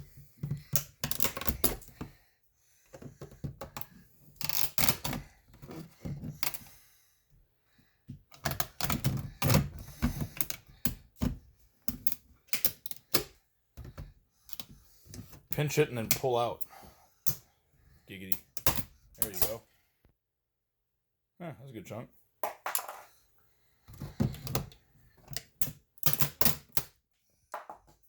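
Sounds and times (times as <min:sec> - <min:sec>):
clicks and knocks on plastic trim: 0:02.9 - 0:06.6.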